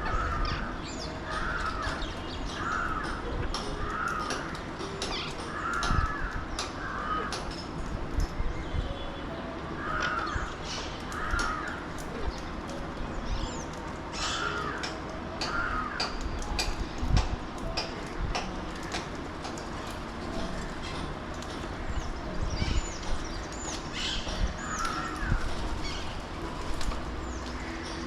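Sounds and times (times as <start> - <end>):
harsh rasping bird calls: 0.0 - 7.6, 9.7 - 12.5, 13.1 - 16.7, 20.2 - 28.0.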